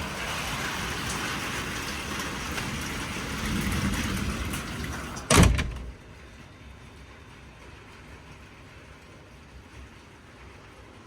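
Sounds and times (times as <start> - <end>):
storm wind: 0.0 - 11.0
vehicle door slamming: 5.3 - 5.9.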